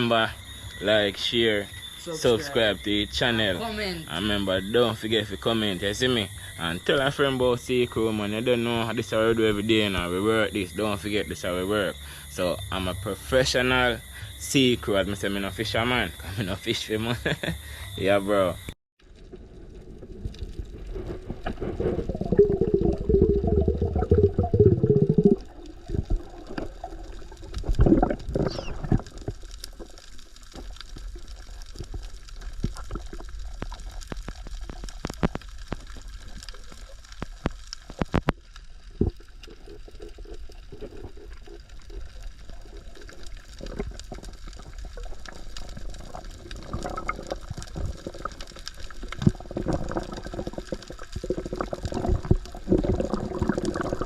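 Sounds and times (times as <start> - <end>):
water gurgling and sloshing: 19.1 - 54.0
small sharp clicks and knocks: 32.6 - 39.2.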